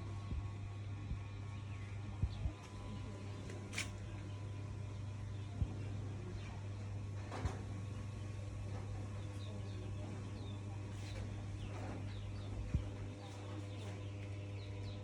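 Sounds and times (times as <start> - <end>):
steady low hum: 0.0 - 15.0
small birds chirping: 7.9 - 15.0.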